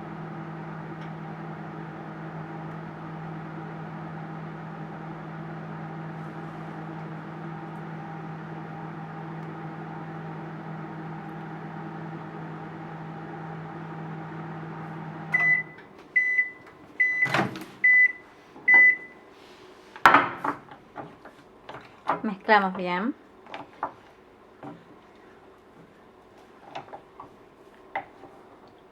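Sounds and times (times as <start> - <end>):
microwave oven humming: 0.0 - 21.7
microwave short beeps: 15.3 - 19.2.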